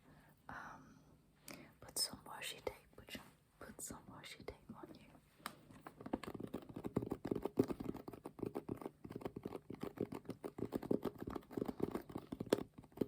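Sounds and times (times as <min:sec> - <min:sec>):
soft taps and rustles: 0:05.3 - 0:13.0.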